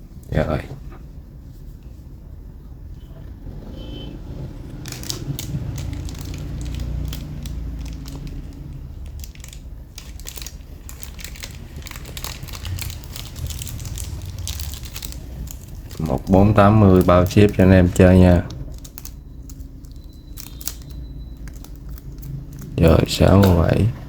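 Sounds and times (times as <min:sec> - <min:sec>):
low steady hum: 0:00.0 - 0:24.0
crinkling and crackling handling noise: 0:04.4 - 0:24.0.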